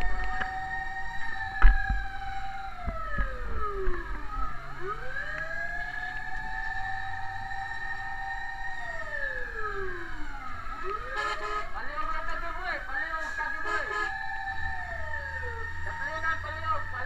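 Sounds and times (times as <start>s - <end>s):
fire truck sirens wailing: 0.0s - 17.0s.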